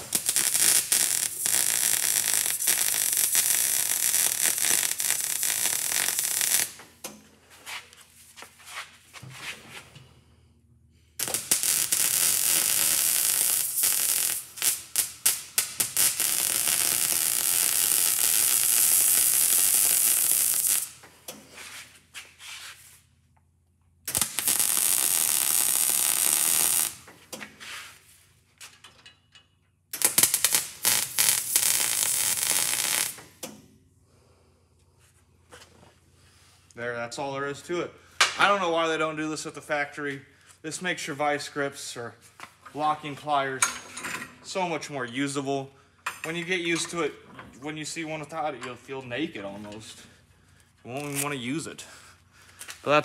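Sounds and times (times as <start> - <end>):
arc welder crackling hiss: 0.0 - 7.0, 11.2 - 22.1, 24.1 - 28.1, 29.9 - 33.6, 50.9 - 53.0.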